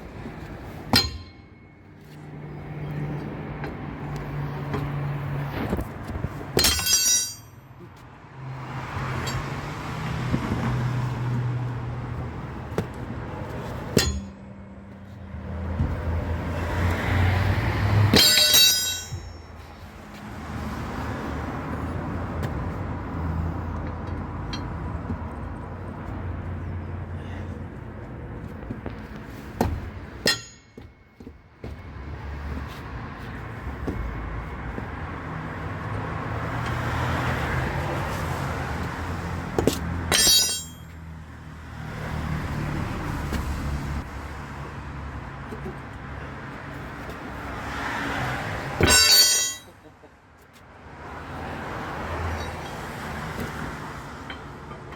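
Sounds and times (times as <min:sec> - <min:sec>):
passing traffic hum: 0:00.0 - 0:54.9
wheel brace clanging on nuts: 0:00.8 - 0:02.2, 0:05.5 - 0:08.0, 0:09.1 - 0:09.6, 0:12.7 - 0:14.5, 0:18.0 - 0:19.8, 0:24.0 - 0:25.6, 0:29.6 - 0:31.9, 0:39.5 - 0:41.0, 0:48.8 - 0:50.0, 0:54.2 - 0:54.9.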